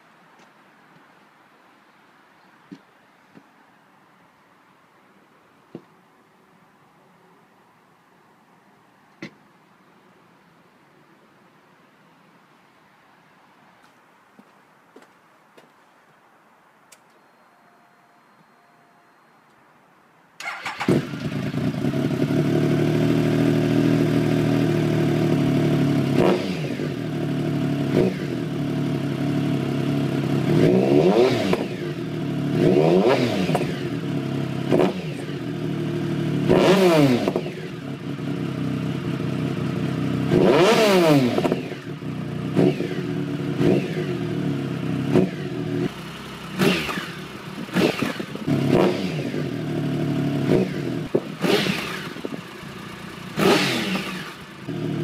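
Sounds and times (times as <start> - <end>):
motorcycle engine revving: 20.4 - 55.0.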